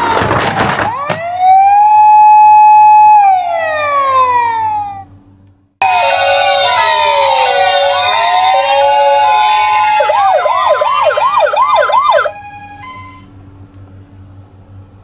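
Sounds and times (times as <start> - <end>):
toy sirens wailing: 0.8 - 5.1, 5.8 - 13.3
faint hum: 1.2 - 15.0.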